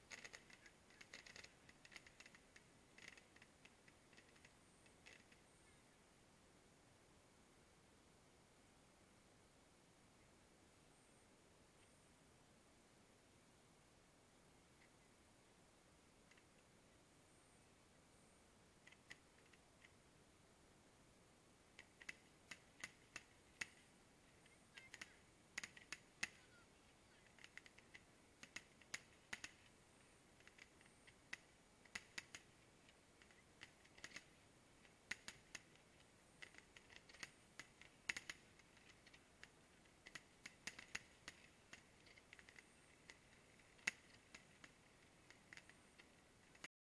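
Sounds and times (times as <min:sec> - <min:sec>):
faint sharp clicks and pops: 0:00.0 - 0:06.0, 0:14.6 - 0:15.1, 0:15.9 - 0:16.8, 0:18.7 - 0:20.1, 0:21.6 - 0:46.7.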